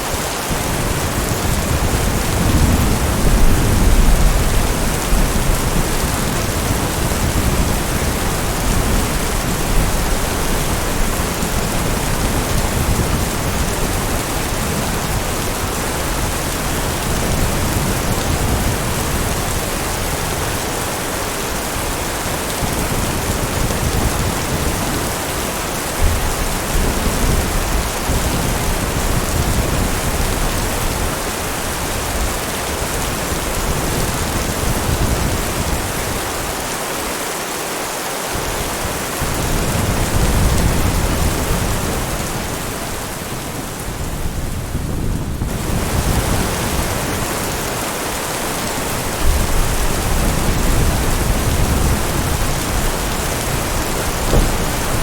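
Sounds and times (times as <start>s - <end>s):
heavy rain: 0.0s - 55.0s
low thunder rumbling: 0.5s - 36.1s, 48.9s - 55.0s.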